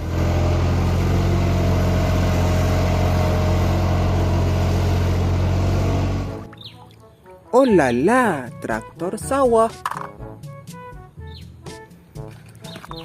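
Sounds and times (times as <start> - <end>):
tractor engine idling: 0.0 - 6.6.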